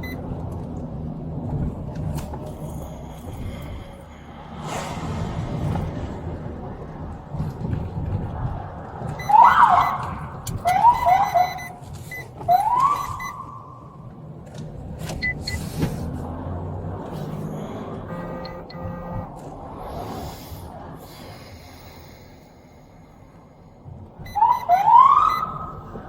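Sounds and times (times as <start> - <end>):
low vehicle rumble: 0.0 - 26.0
high beeps: 10.7 - 13.7, 18.1 - 19.3, 24.3 - 25.8.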